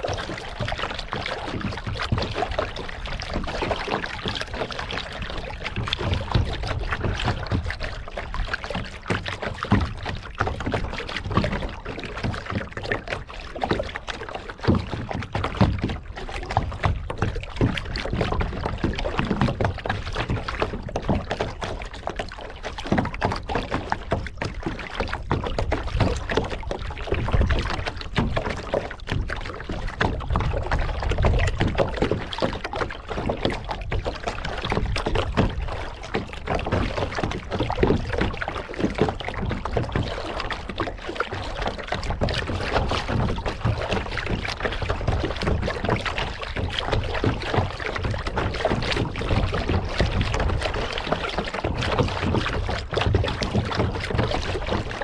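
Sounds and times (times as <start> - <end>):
water splashing around kayak: 0.0 - 55.0.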